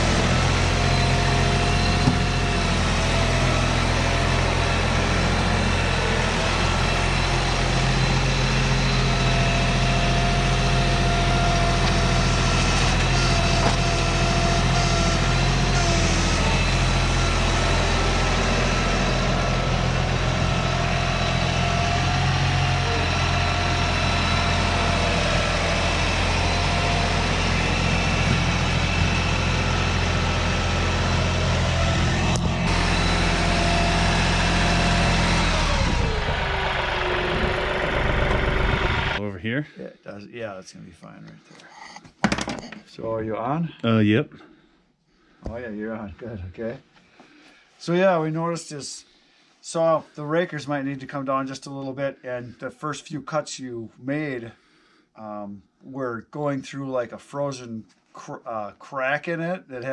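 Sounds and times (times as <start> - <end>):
engine running steadily: 0.0 - 39.2.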